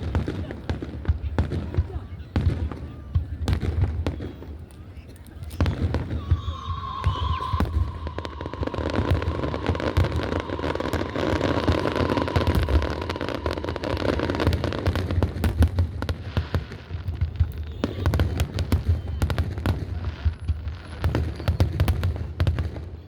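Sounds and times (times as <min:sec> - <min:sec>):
fireworks bangs and crackling: 0:00.0 - 0:23.0
steady high tone: 0:05.7 - 0:15.8.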